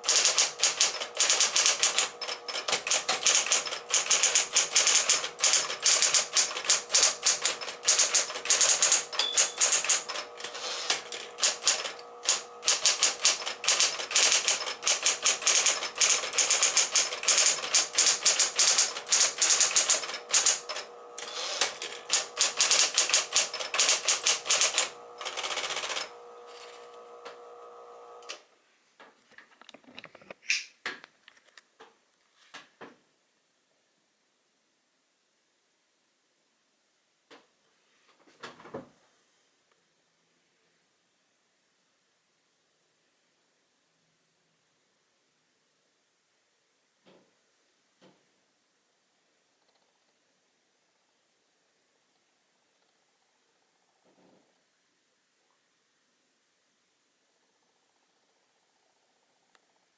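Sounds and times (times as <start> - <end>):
typewriter key strikes clattering: 0.0 - 26.1
typewriter motor humming: 0.0 - 28.4.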